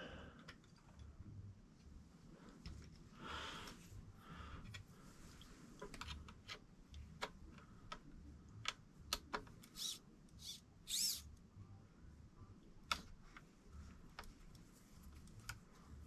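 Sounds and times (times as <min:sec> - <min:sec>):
faint clicks of small tools: 0:00.4 - 0:01.1
pitch sweeping servo sound: 0:09.8 - 0:11.2.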